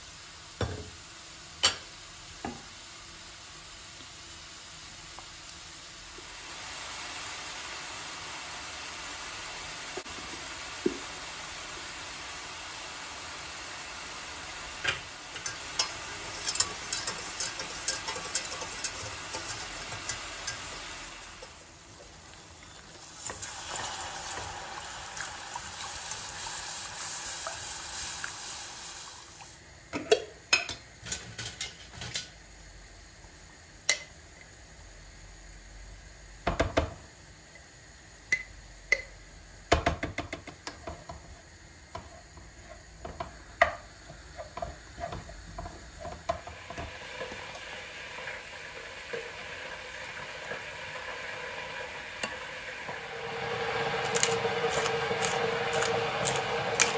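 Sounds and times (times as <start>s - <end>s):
steady hiss: 0.0s - 56.9s
utensils clattering on cookware: 14.8s - 21.6s, 30.0s - 32.4s.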